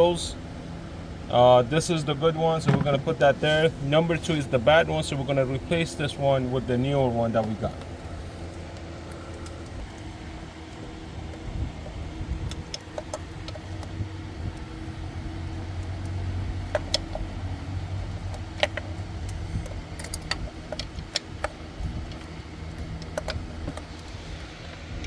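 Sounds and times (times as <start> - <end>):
steady low hum: 0.0 - 25.0.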